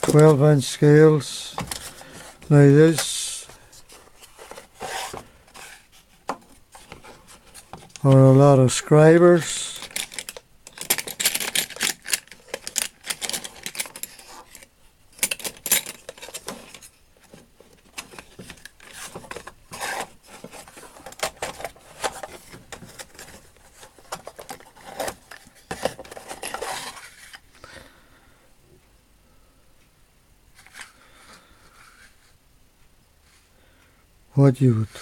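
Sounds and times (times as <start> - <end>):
steel tools clinking in metal drawer: 15.2 - 16.4.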